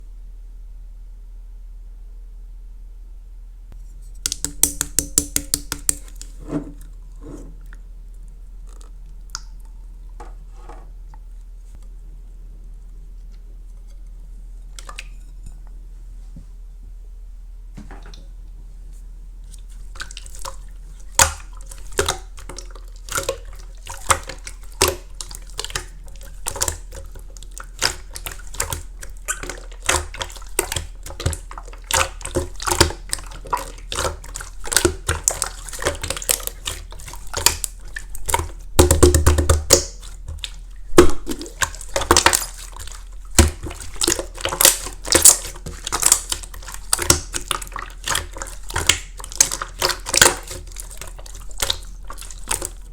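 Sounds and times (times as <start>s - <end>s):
slime clicking and popping: 4.2s - 6.3s, 43.4s - 50.6s.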